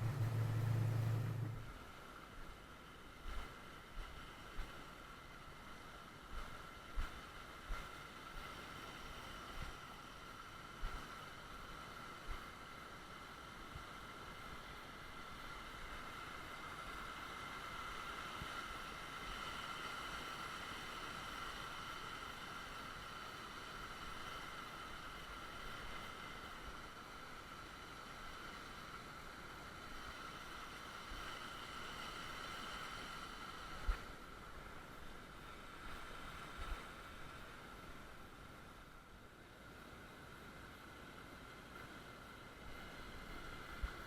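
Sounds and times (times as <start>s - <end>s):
creek water babbling: 0.0s - 1.9s.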